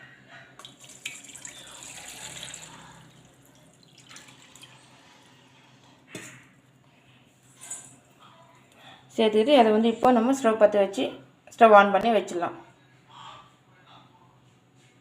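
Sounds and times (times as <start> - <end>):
water pouring and splashing: 0.6 - 5.0.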